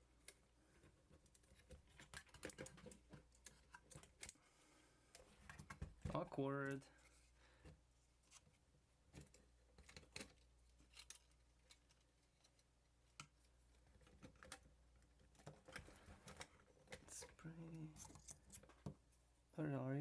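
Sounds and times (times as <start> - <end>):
small parts clicks and taps: 1.1 - 4.4.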